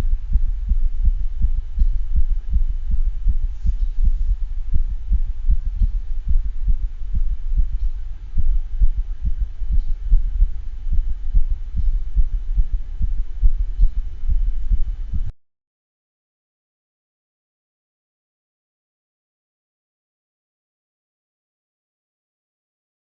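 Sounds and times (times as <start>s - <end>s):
dog heartbeat thuds with murmur: 0.0s - 15.3s.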